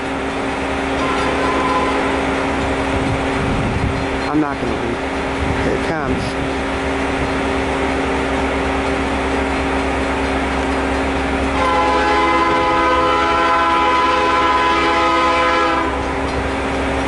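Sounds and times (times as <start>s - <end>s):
locomotive air horn chord: 1.0s - 2.3s, 11.5s - 16.2s.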